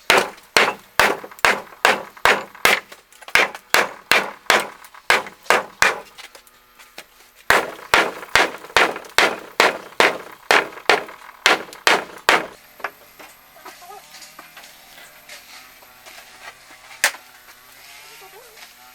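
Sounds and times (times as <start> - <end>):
hand tool striking something hard: 0.0 - 6.2, 7.5 - 13.0.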